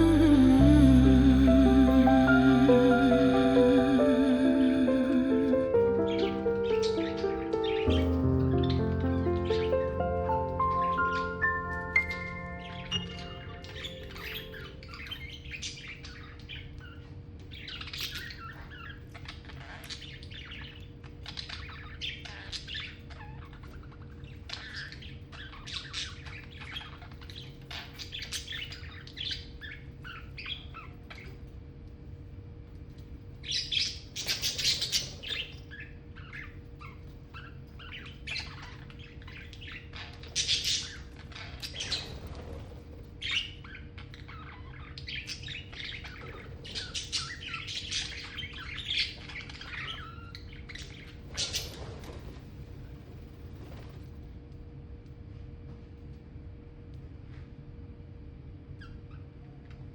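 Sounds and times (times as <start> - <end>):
harsh bird calls: 0.0 - 31.4
budgerigars chirping: 6.0 - 31.4, 33.4 - 42.5, 43.2 - 52.0.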